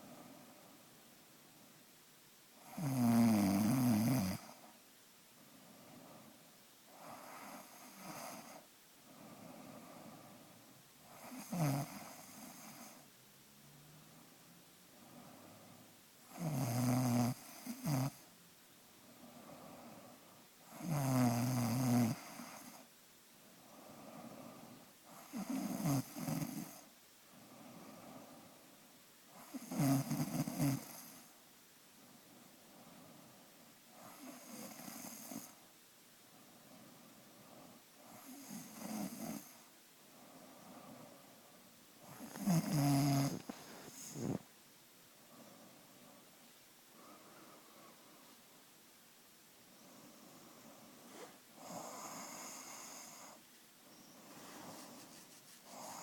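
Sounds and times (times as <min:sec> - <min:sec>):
quiet breathing: 0:00.0 - 0:56.0
person snoring: 0:02.6 - 0:04.6, 0:11.2 - 0:13.0, 0:15.0 - 0:18.2, 0:23.7 - 0:26.8, 0:29.4 - 0:31.2, 0:42.0 - 0:44.5, 0:50.6 - 0:53.4, 0:54.0 - 0:56.0
snort: 0:11.1 - 0:13.1, 0:23.9 - 0:26.9, 0:29.4 - 0:31.3, 0:37.6 - 0:39.7, 0:42.0 - 0:44.5, 0:50.6 - 0:53.4, 0:54.0 - 0:56.0.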